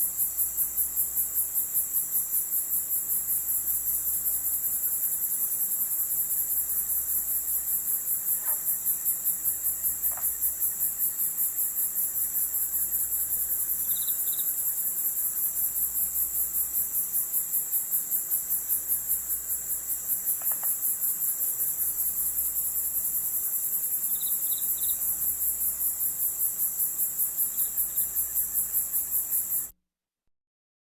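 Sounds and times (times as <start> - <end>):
crickets chirping: 0.0 - 29.7.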